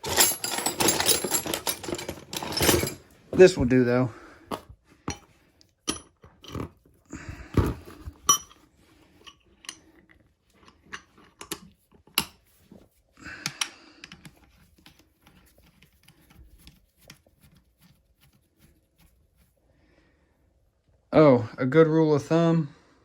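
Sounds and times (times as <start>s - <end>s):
rattling scrapes: 0.0s - 3.8s.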